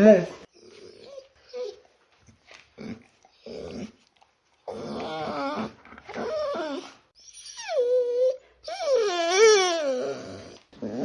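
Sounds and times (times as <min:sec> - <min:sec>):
small dog whimpering and whining: 0:00.6 - 0:01.8, 0:04.7 - 0:11.0.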